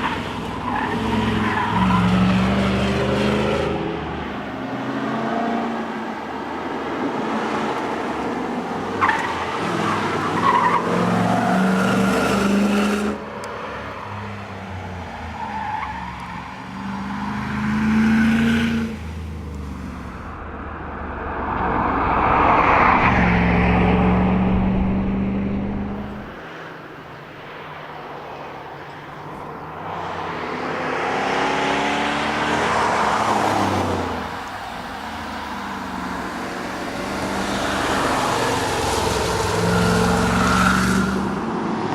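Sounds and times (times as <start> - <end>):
car engine accelerating: 16.7 - 26.3.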